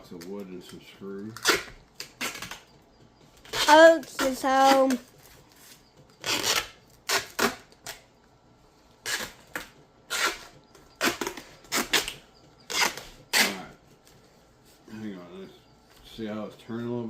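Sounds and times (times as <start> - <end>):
tape ripping off a roll: 1.3 - 2.6, 6.2 - 8.0, 9.0 - 13.6.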